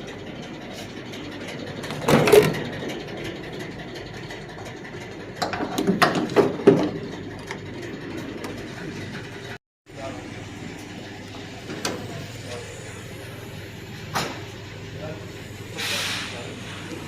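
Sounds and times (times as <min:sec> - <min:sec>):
steady hum: 0:09.9 - 0:17.0.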